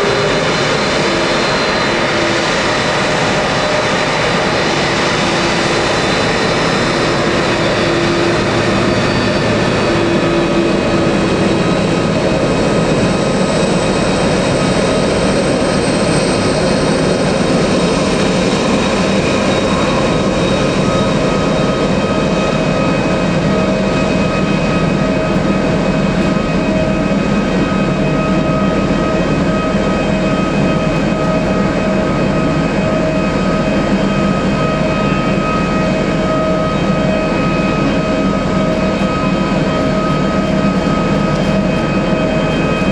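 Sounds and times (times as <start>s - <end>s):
jet engines running: 0.0s - 42.9s.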